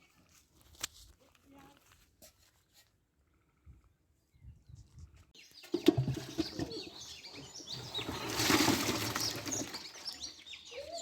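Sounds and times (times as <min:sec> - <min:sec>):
water splashing in pond: 0:05.7 - 0:10.3.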